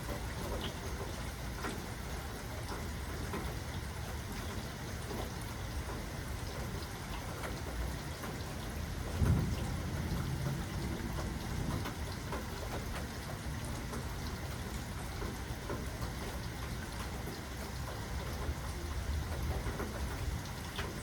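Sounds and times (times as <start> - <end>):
steady rain falling: 0.0 - 21.0
low rumble of thunder: 8.8 - 14.3.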